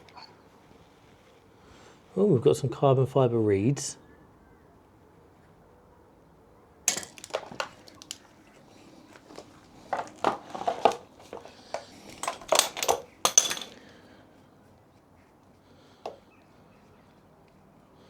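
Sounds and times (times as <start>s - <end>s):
metal parts clinking and rattling: 6.9s - 8.2s, 9.2s - 14.0s.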